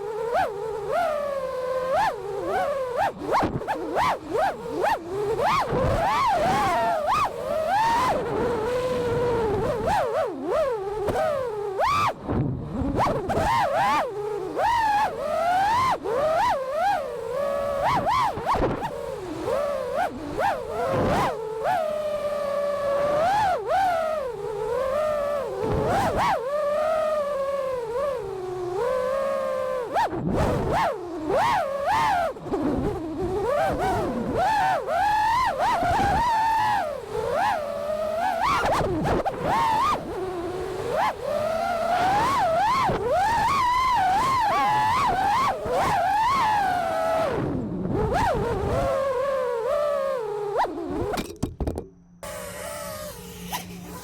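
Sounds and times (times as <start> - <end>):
quadcopter motors whining: 0.0 - 51.2, 52.2 - 54.0
drone motors whining: 48.8 - 54.0.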